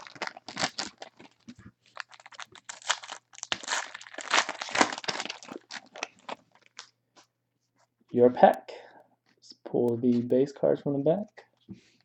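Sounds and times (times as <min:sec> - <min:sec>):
foil pack tearing and crinkling: 0:00.0 - 0:06.9.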